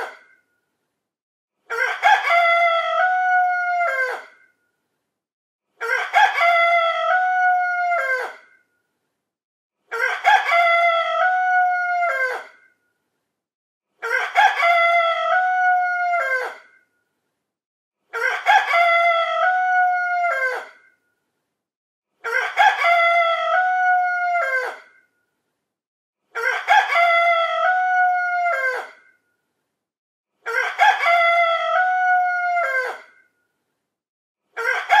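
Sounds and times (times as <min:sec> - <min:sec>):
rooster crowing: 0:01.7 - 0:04.4, 0:05.8 - 0:08.5, 0:09.9 - 0:12.7, 0:14.0 - 0:16.8, 0:18.2 - 0:20.8, 0:22.2 - 0:25.0, 0:26.4 - 0:29.0, 0:30.5 - 0:33.2, 0:34.6 - 0:35.0.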